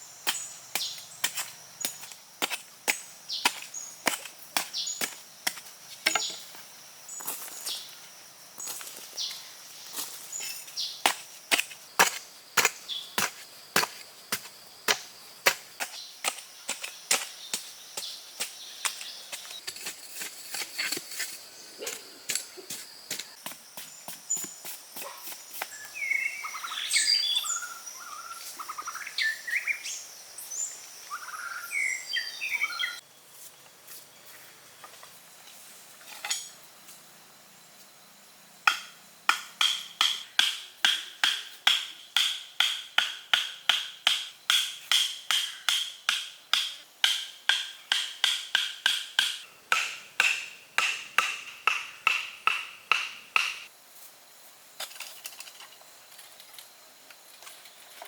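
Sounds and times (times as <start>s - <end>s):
high chirping calls: 24.3s - 33.0s.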